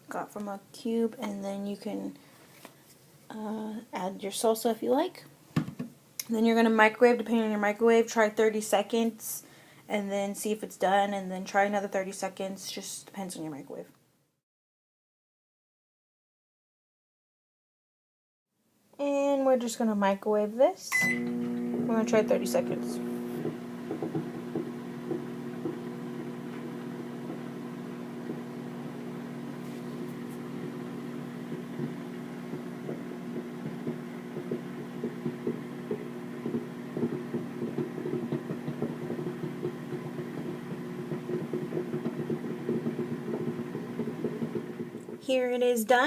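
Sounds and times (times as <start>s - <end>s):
microwave oven humming: 21.0s - 45.2s.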